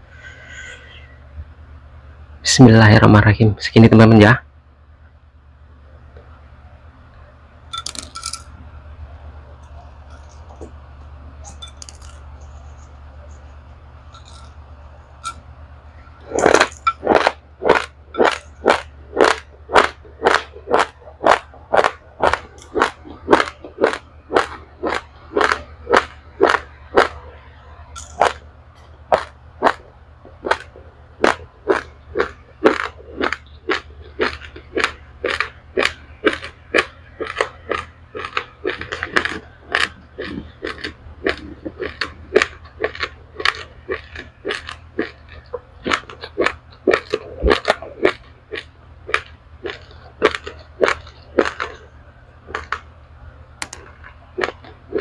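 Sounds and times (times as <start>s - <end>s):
person crunching dry rice: 11.6s - 13.5s, 16.2s - 27.2s, 29.1s - 52.9s, 53.6s - 55.0s.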